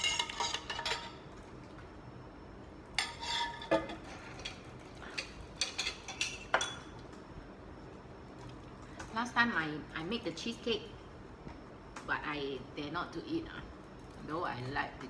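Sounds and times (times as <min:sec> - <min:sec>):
cutlery clinking on crockery: 0:03.0 - 0:06.9.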